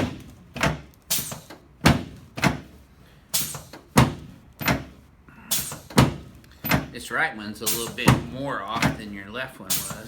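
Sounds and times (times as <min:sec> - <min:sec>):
drop table sections slamming: 0:00.0 - 0:02.7, 0:03.4 - 0:06.9.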